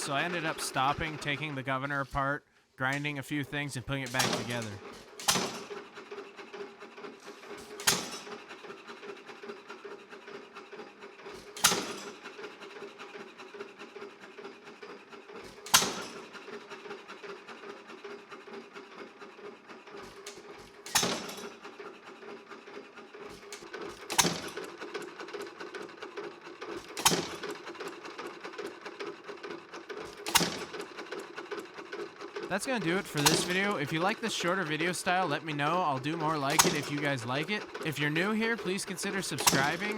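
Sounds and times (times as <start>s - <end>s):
engine firing bangs: 32.6s - 34.9s, 35.8s - 39.9s.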